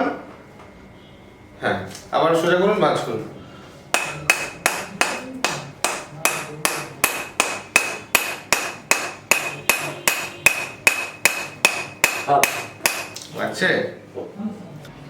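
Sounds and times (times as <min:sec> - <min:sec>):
hammer tapping metal chisel: 0:03.9 - 0:13.3.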